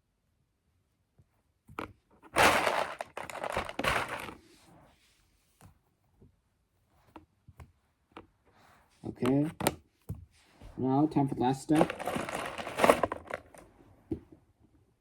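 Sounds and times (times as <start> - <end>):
plastic straws rustling clatter: 2.2 - 4.5, 11.1 - 13.7.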